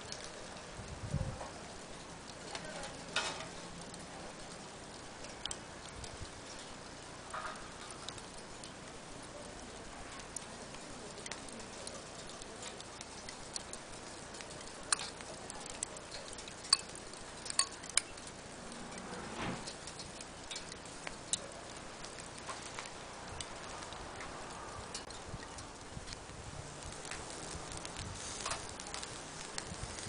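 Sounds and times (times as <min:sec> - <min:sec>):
sharp clicks and ticks: 0:11.1 - 0:19.0, 0:19.6 - 0:30.0
brief swish: 0:18.8 - 0:19.7.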